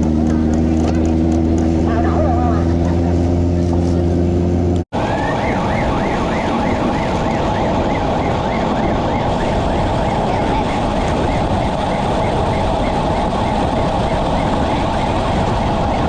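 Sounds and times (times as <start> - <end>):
engine hum: 0.0 - 16.0
loud rushing noise: 1.8 - 16.0
siren wailing: 4.9 - 16.0.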